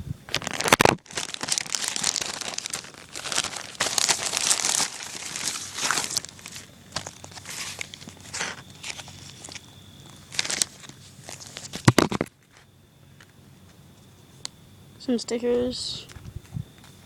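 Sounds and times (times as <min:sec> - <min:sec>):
packaging tearing: 0:00.3 - 0:09.6, 0:10.2 - 0:12.3
packaging crinkling: 0:00.3 - 0:12.7.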